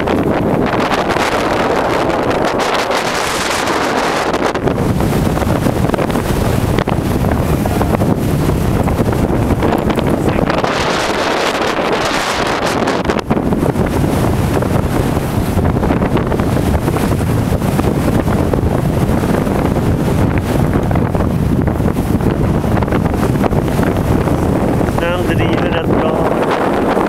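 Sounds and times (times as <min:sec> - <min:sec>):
strong wind buffeting microphone: 0:00.0 - 0:27.0.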